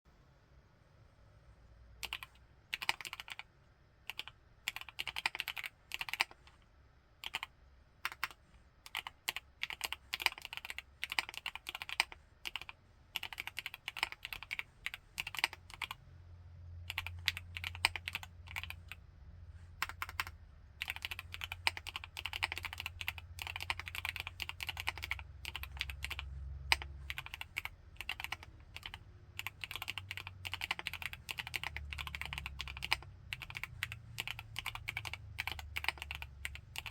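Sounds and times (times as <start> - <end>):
faint low hum: 0.1 - 36.9
mechanical keyboard typing: 2.0 - 3.5, 4.1 - 6.5, 7.2 - 16.0, 16.8 - 19.0, 19.8 - 36.9.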